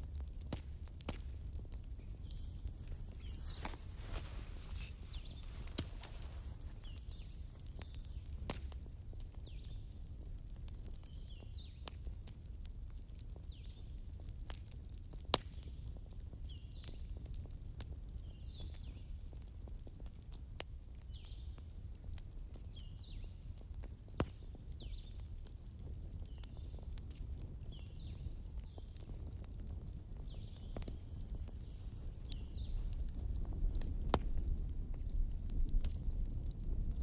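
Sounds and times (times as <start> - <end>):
bonfire crackling and popping: 0.0 - 37.0
birds chirping: 1.6 - 8.2.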